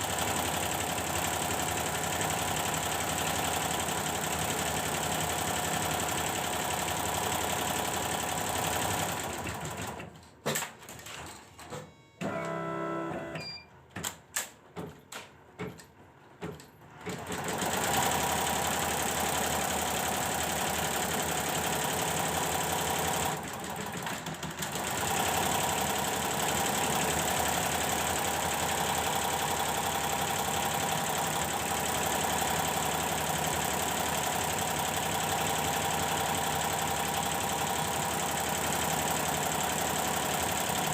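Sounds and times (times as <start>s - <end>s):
embroidery machine stitching clatter: 0.0s - 10.1s, 17.0s - 40.9s
machine clicks and knocks: 13.9s - 17.4s.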